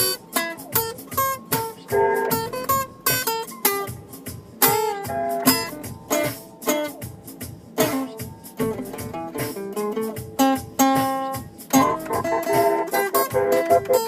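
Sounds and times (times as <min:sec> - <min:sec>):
guitar plucked and strummed: 0:09.1 - 0:14.0.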